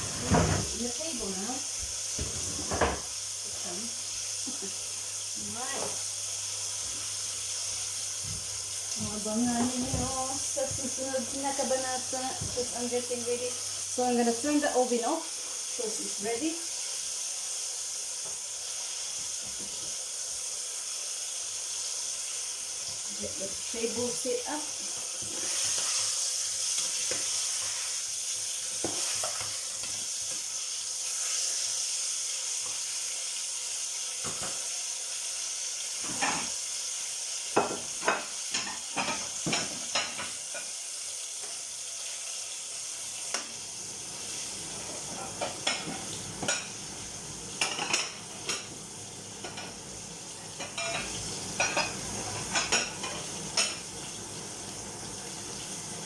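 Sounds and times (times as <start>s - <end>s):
food sizzling in a frying pan: 0.0s - 56.0s
clinks of dishes and cutlery: 36.0s - 36.5s, 37.6s - 40.7s, 45.3s - 46.8s, 47.6s - 48.7s, 50.6s - 53.8s.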